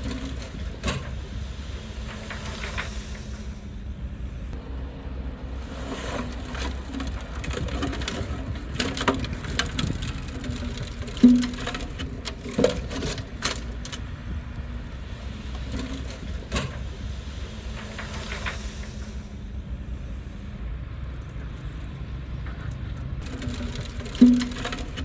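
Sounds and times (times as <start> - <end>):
heavy machine engine running: 0.0 - 25.0
wood cracking and snapping: 6.4 - 14.0, 23.2 - 25.0.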